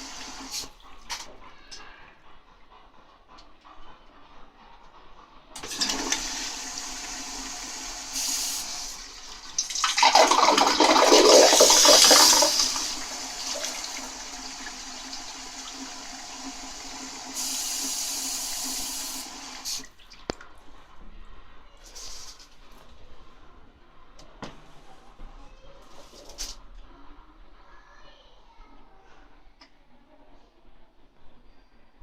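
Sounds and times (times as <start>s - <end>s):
toilet flushing with gurgling: 0.0s - 1.7s, 5.6s - 20.6s
toilet refilling hiss: 0.0s - 2.1s, 5.6s - 20.4s, 21.8s - 22.6s.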